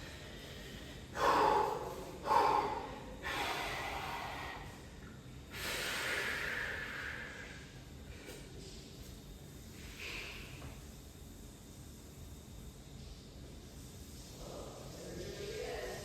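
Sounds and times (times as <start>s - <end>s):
man breathing hard: 0.0s - 8.4s.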